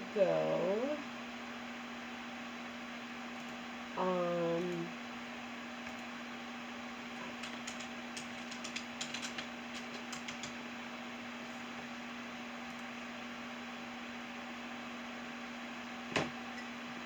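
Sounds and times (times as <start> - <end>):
electrical hum: 0.0 - 17.0
keyboard typing: 7.2 - 10.6.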